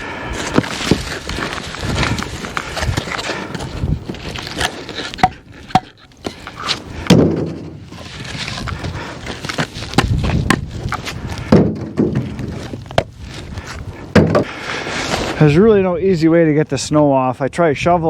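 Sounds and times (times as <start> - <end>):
shovel scraping and knocking snow: 0.4 - 15.5
heavy thumps: 5.2 - 6.4, 7.1 - 8.0, 9.5 - 13.2, 14.1 - 14.5.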